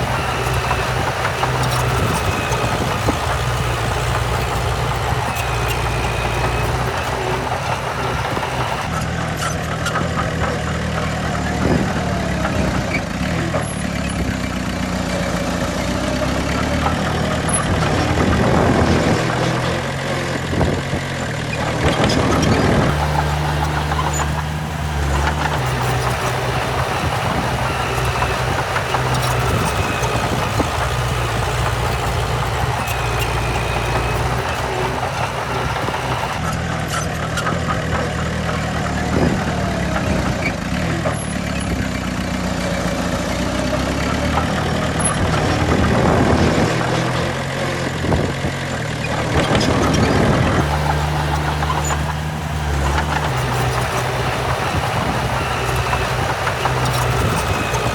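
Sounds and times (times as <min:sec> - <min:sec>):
heavy diesel engines running: 0:00.0 - 0:09.2, 0:22.9 - 0:36.5, 0:50.6 - 0:57.9.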